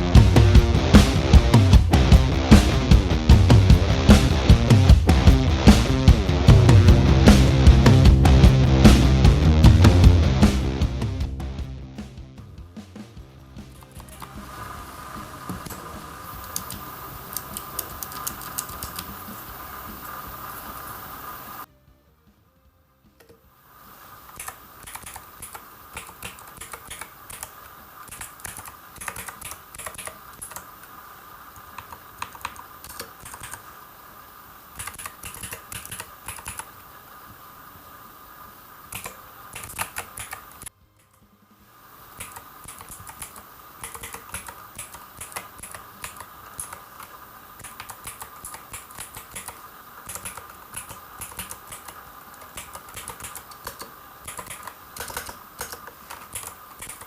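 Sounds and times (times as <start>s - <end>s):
mechanical keyboard typing: 16.4s - 19.2s, 24.4s - 30.7s, 31.7s - 33.6s, 34.8s - 36.7s, 38.9s - 40.7s, 42.2s - 57.0s.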